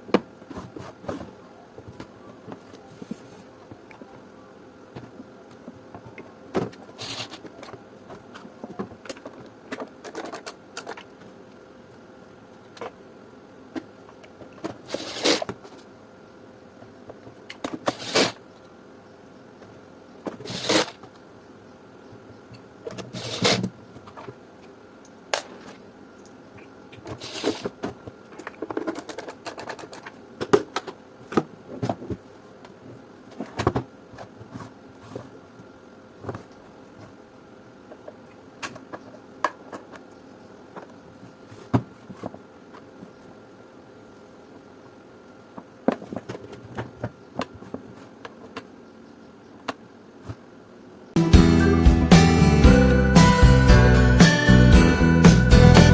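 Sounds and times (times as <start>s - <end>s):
plastic parts clicking and knocking: 7.4s - 11.1s, 27.1s - 32.2s.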